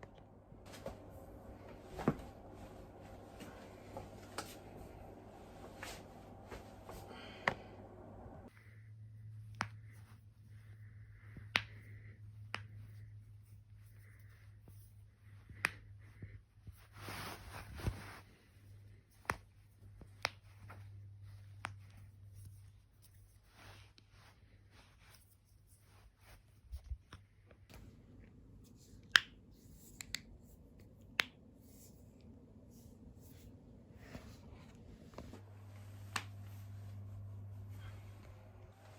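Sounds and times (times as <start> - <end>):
steady low hum: 0.0 - 38.9.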